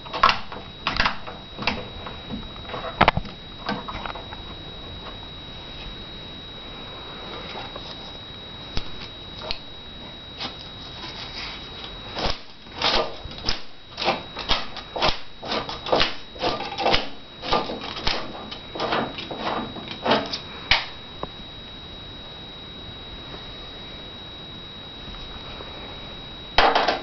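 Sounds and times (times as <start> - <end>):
faint high-pitched tone: 17.4 - 27.0.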